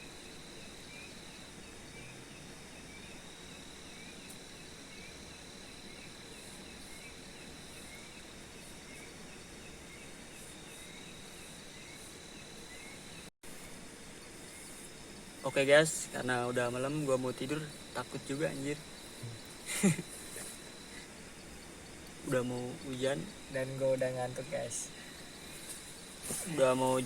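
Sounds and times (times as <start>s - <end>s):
insect chirping: 0.0s - 27.0s
insects trilling: 0.0s - 27.0s
faint even hiss: 9.9s - 27.0s.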